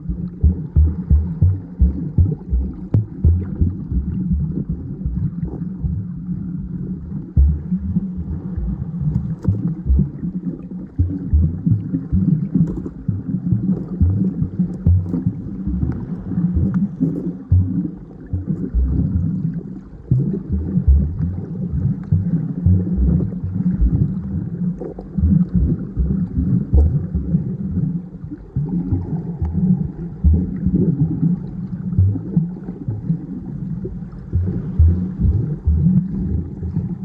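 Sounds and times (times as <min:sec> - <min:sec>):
muffled water sloshing: 0:00.0 - 0:37.0
low knocks: 0:00.1 - 0:05.2, 0:07.4 - 0:07.7.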